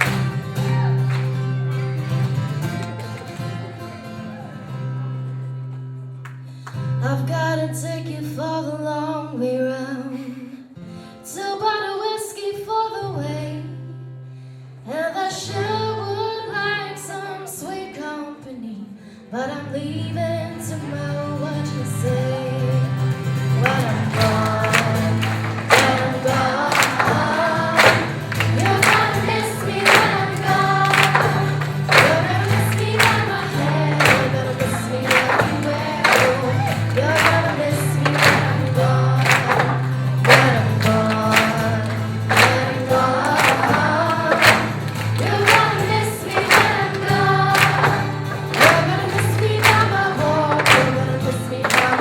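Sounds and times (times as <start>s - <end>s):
voices singing: 23.5s - 52.0s.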